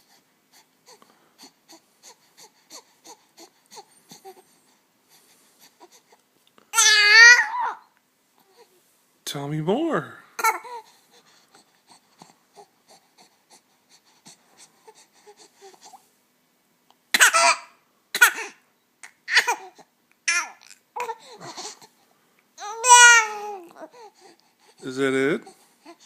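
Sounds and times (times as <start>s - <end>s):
infant breaths and mouth sounds: 0.0s - 6.3s, 10.4s - 16.1s
infant cooing: 6.8s - 8.8s, 10.4s - 11.0s, 18.4s - 21.9s, 22.6s - 26.0s.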